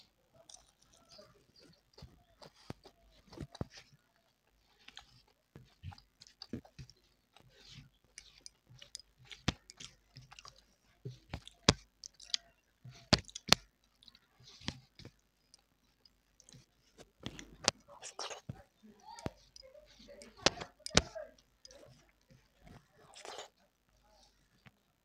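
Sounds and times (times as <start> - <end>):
wet chewing: 0.0 - 24.9
mouth clicks and smacks: 8.1 - 23.6.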